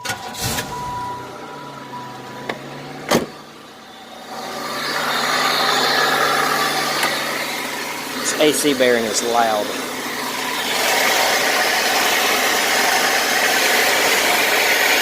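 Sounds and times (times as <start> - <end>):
car warning chime: 0.0 - 3.1
car engine idling: 0.0 - 15.0.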